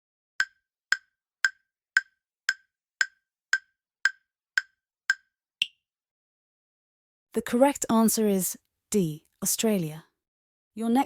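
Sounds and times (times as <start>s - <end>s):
clock-like timer ticks: 0.4s - 5.8s
higher-pitched tick: 0.4s - 5.8s.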